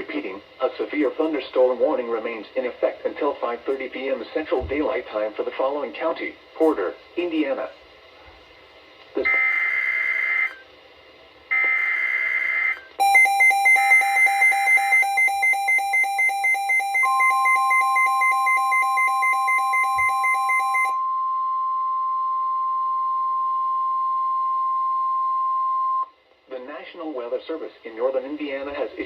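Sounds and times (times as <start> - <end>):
receiver alarm beeping: 9.2 - 10.6, 11.5 - 26.1
steady single-pitch alarm tone: 9.3 - 10.6, 11.5 - 26.1.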